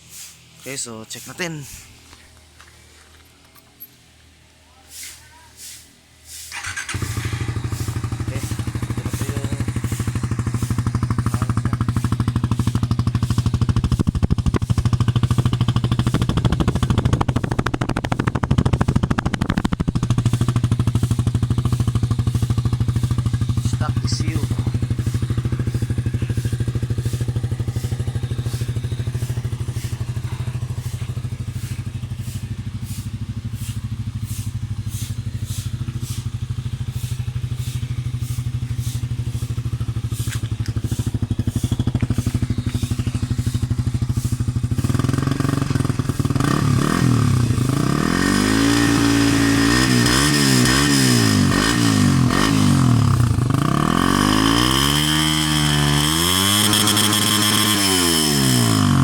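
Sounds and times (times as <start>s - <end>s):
motorcycle engine idling and revving: 0.0s - 59.0s.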